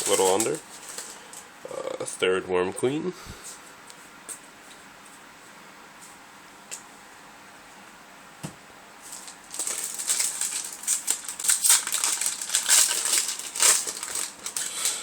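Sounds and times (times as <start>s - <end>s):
foil wrapper crinkling: 0.0s - 1.4s, 9.0s - 15.0s.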